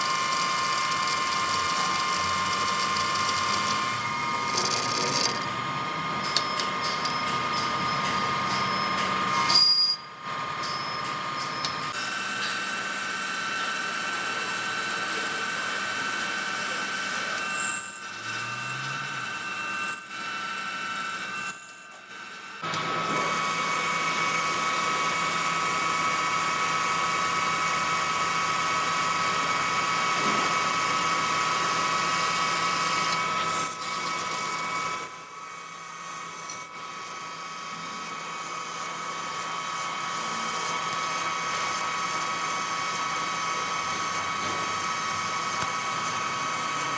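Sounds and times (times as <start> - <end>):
metal lathe whining: 0.0 - 11.1, 11.7 - 46.9
brief high squeals: 8.6 - 10.1.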